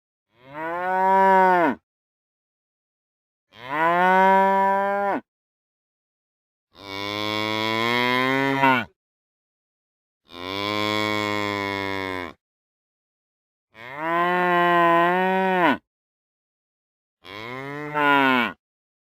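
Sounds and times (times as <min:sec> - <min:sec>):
cow mooing: 0:00.4 - 0:01.8, 0:03.5 - 0:05.3, 0:06.8 - 0:08.9, 0:10.3 - 0:12.4, 0:13.8 - 0:15.8, 0:17.2 - 0:18.6.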